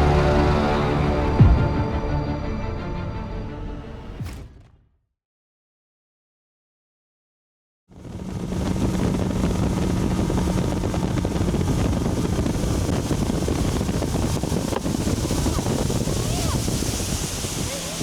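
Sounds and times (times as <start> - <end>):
boat motor humming: 8.0 - 18.0
wind buffeting microphone: 8.0 - 18.0.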